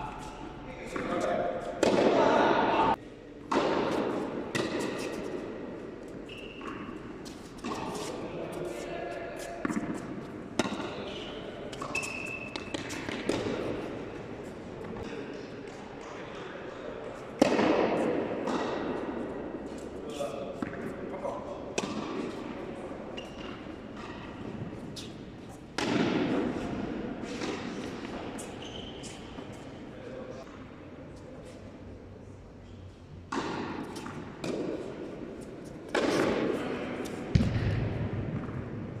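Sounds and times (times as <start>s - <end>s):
tennis ball bouncing: 0.9s - 2.3s, 3.5s - 5.5s, 9.6s - 11.0s, 11.7s - 14.2s, 17.4s - 19.1s, 20.6s - 20.9s, 21.8s - 22.6s, 23.2s - 28.5s, 33.3s - 38.8s
tennis racket hitting ball: 0.9s - 2.5s, 3.5s - 5.6s, 9.6s - 11.0s, 11.7s - 14.2s, 17.4s - 19.2s, 21.8s - 22.6s, 23.2s - 28.5s, 33.3s - 38.6s
tennis ball hits: 1.8s - 2.3s, 11.7s - 13.8s, 17.4s - 19.0s, 25.7s - 26.6s, 33.3s - 35.1s, 35.9s - 38.6s
high-pitched shoe squeak: 6.3s - 6.8s, 11.9s - 12.8s, 28.4s - 29.4s.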